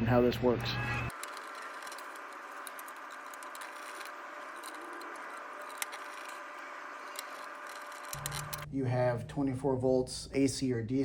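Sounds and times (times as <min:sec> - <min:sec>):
light clicks and rattles: 0:01.1 - 0:08.7.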